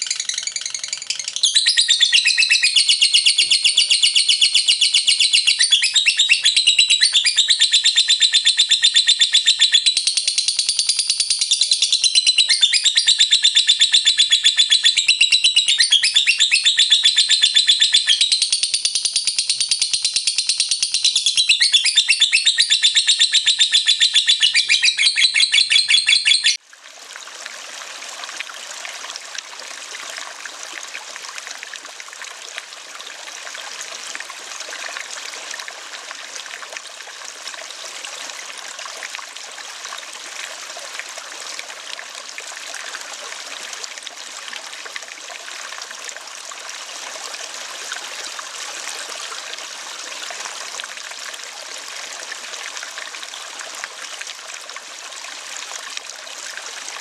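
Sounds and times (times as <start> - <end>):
bird chattering trill: 0.0 - 26.6
running water: 0.0 - 57.0.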